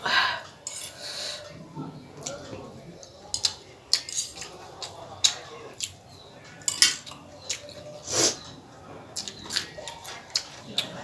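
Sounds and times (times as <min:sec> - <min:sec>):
utensil clinking on a plate: 0:03.3 - 0:06.0, 0:06.6 - 0:07.8.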